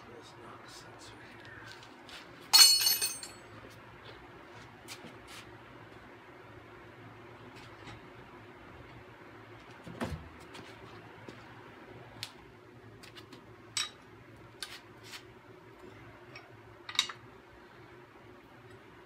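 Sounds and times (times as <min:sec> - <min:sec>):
metal tools clinking: 0:02.6 - 0:03.4.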